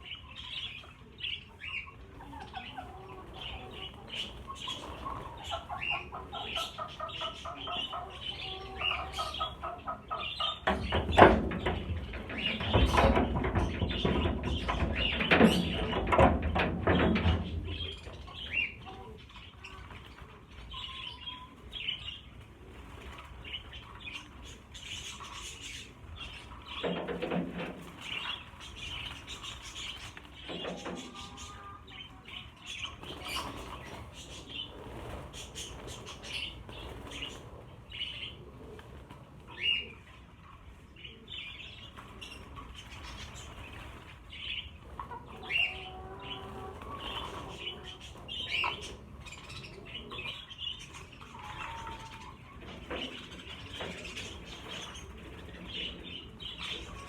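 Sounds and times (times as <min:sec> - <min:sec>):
budgerigars chattering and chirping: 0:00.0 - 0:22.3, 0:23.4 - 0:38.4, 0:41.0 - 0:57.0
wings flapping: 0:09.0 - 0:18.5.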